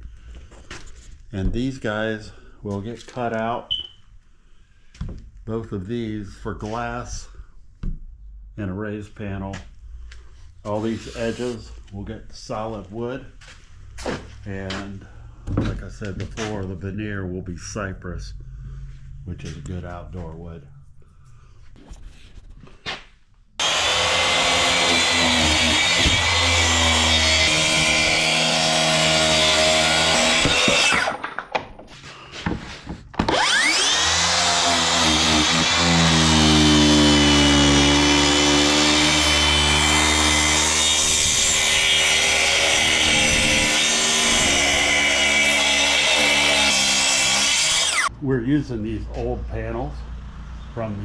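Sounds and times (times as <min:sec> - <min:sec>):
saw cutting plywood: 0:10.8 - 0:11.8, 0:23.6 - 0:31.3, 0:33.2 - 0:48.1.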